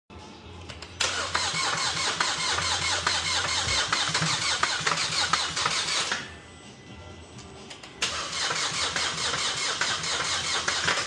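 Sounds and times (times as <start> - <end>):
car engine starting and running: 1.0 - 6.4, 8.0 - 11.0.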